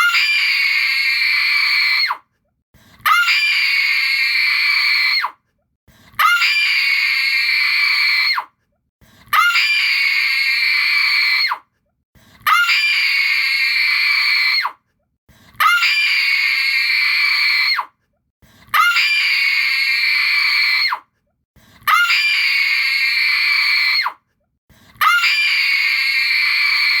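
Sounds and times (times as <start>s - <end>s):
woman screaming in terror: 0.0s - 2.2s, 3.0s - 5.4s, 6.2s - 8.5s, 9.3s - 11.6s, 12.5s - 14.8s, 15.6s - 17.9s, 18.8s - 21.0s, 21.9s - 24.2s, 25.0s - 27.0s.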